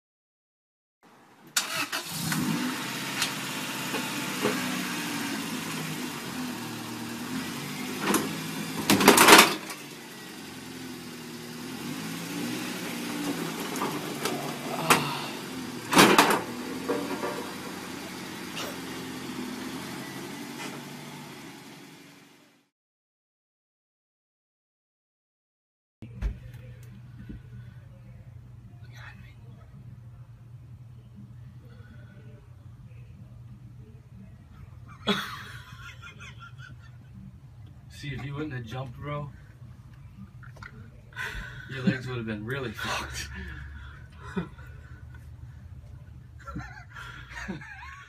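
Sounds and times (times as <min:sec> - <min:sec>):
car engine revving: 0:01.6 - 0:22.7.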